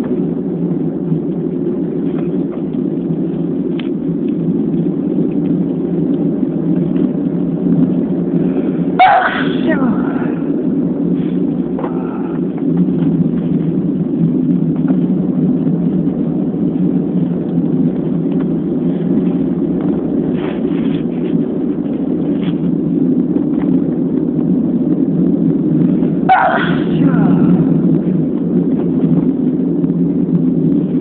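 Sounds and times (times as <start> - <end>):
low outdoor rumble: 0.0 - 31.0
person sneezing: 9.0 - 9.8, 26.3 - 27.1.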